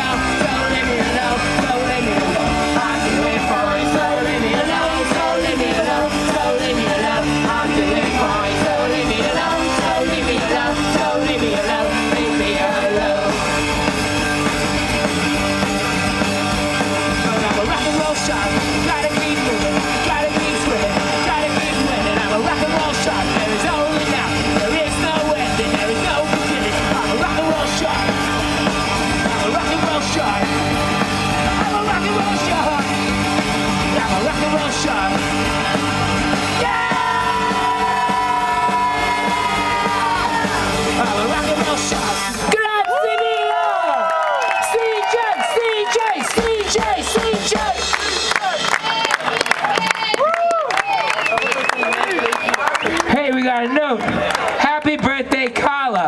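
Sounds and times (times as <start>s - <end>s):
person singing and shouting: 0.0s - 13.7s, 29.0s - 43.9s, 44.6s - 49.1s
punk rock band playing: 0.0s - 42.8s, 44.6s - 50.2s.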